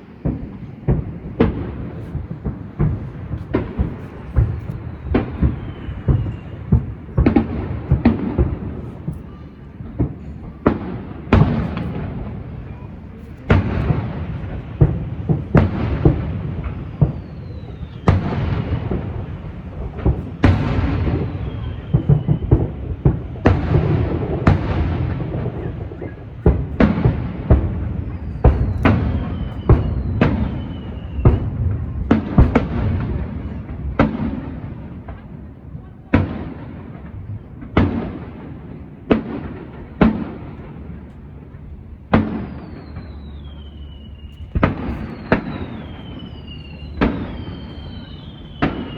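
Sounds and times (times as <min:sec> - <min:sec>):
rumbling echo: 0:00.0 - 0:35.8
firework shells booming: 0:00.0 - 0:48.9.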